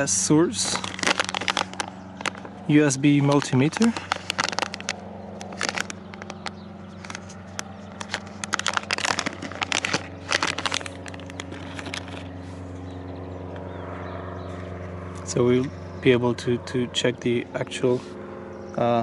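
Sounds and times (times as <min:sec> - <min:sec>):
low hum: 0:00.0 - 0:19.0
plastic items clicking and tapping: 0:00.8 - 0:12.3.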